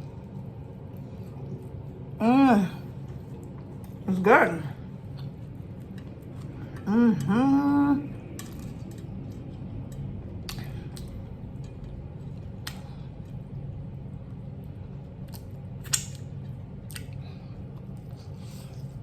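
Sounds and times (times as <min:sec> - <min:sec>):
steady low hum: 0:00.0 - 0:19.0
chewing: 0:15.2 - 0:19.0.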